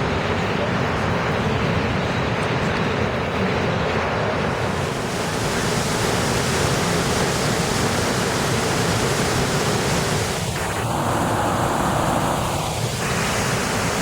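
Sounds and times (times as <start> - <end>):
waterfall roaring: 4.3 - 14.0.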